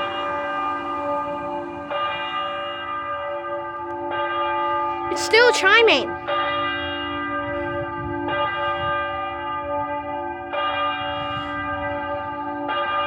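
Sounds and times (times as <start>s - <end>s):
church bell chiming: 0.0s - 13.0s.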